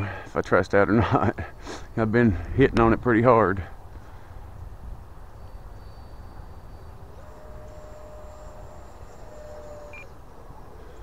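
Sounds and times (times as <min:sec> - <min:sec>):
distant jet fan whine: 0:00.0 - 0:11.0.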